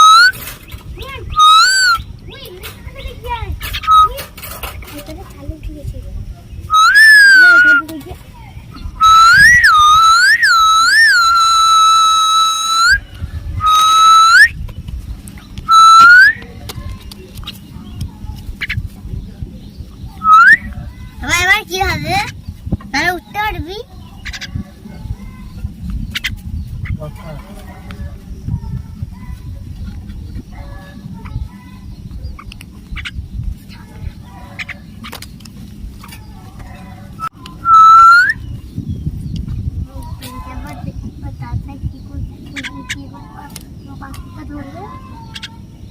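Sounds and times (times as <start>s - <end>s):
loud whistling: 0.0s - 0.5s, 1.3s - 2.1s, 3.8s - 4.2s, 6.7s - 7.8s, 8.9s - 14.6s, 15.6s - 16.5s, 20.2s - 20.8s, 37.2s - 38.5s
loud bird squawk: 0.0s - 2.1s, 3.6s - 4.3s, 6.7s - 7.8s, 8.8s - 14.6s, 15.7s - 16.4s, 20.2s - 20.8s, 37.2s - 38.4s
bird chirping: 0.0s - 45.9s.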